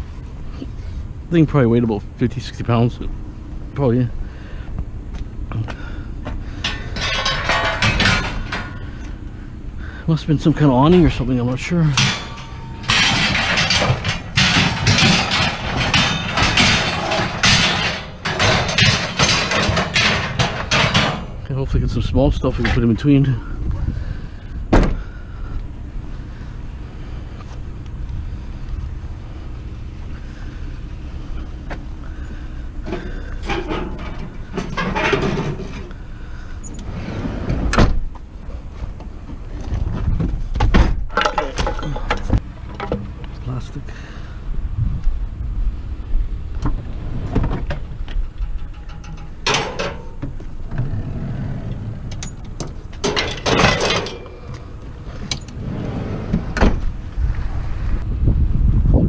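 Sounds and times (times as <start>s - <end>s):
steady low rumble: 0.0s - 59.0s
scrap metal clanging and scraping: 5.5s - 24.4s, 26.1s - 44.4s, 46.6s - 56.7s.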